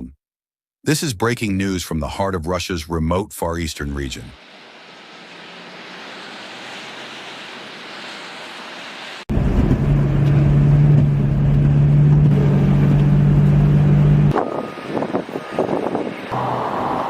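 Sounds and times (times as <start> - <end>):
steady rushing noise: 4.4 - 9.8, 14.3 - 17.0
engine running with low rumble: 4.4 - 17.0.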